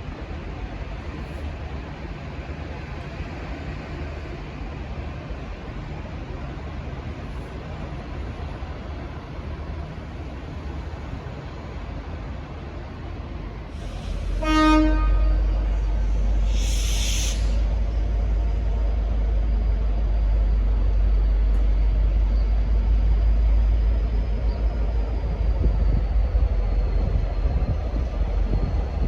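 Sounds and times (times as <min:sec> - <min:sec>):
diesel locomotive engine rumble: 0:00.0 - 0:29.0
air hiss: 0:13.7 - 0:14.4, 0:15.7 - 0:17.9.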